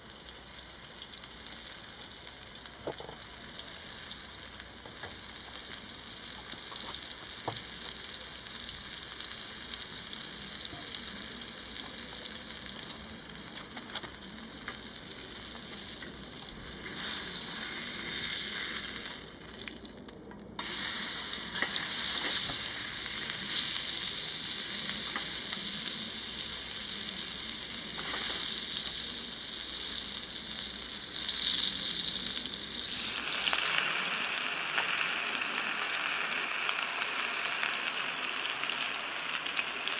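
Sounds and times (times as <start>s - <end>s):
food sizzling in a pan: 0.0s - 20.0s, 20.6s - 39.9s.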